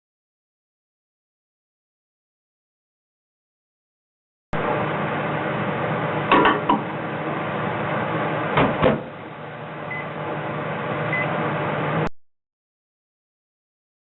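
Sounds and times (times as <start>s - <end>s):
microwave oven humming: 4.6s - 12.1s.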